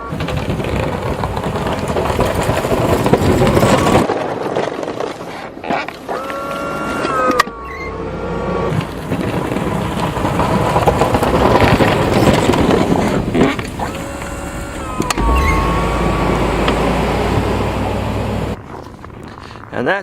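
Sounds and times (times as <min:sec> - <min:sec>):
motor vehicle passing by: 0:07.8 - 0:18.6.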